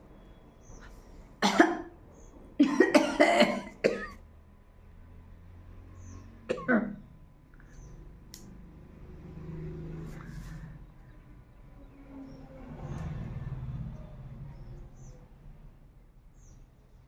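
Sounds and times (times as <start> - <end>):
woman coughing: 1.4 - 1.9, 2.6 - 4.2, 6.5 - 7.0.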